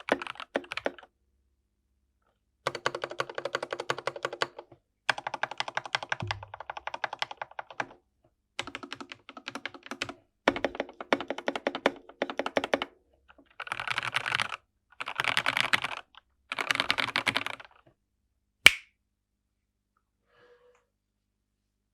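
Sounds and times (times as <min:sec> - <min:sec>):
mechanical keyboard typing: 0:00.0 - 0:01.0, 0:02.7 - 0:08.0, 0:08.6 - 0:12.9, 0:13.5 - 0:17.7.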